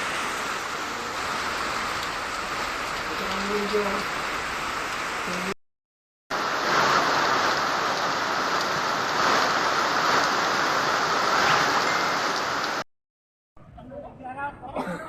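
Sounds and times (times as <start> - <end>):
rushing flood water: 6.3 - 12.8.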